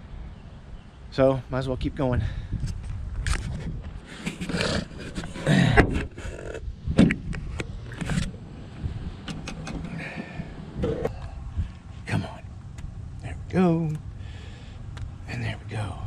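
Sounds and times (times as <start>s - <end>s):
hands and tools clicking and scraping: 3.2s - 6.6s.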